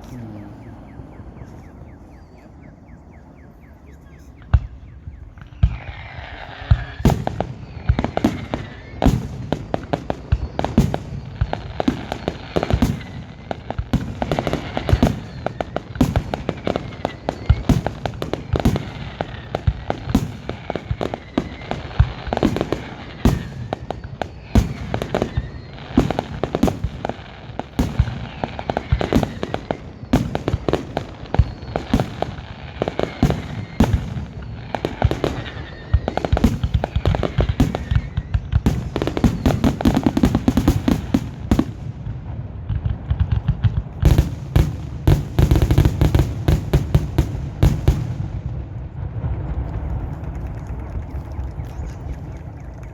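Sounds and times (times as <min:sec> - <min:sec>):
fireworks bangs and crackles: 0:00.0 - 0:52.9
rising whistles of shells: 0:00.1 - 0:41.6.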